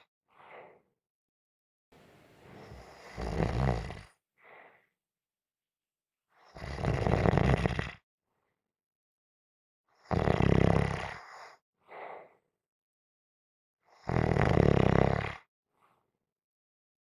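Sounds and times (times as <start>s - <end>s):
person snoring: 2.0s - 4.1s
soft breath: 2.0s - 4.9s, 11.9s - 12.4s.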